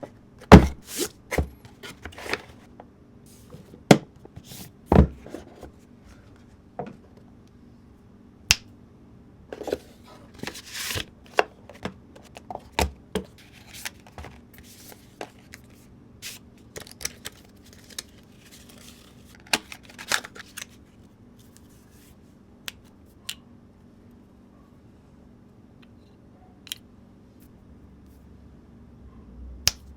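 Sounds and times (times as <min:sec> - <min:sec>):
packaging rustle: 0:13.4 - 0:20.8.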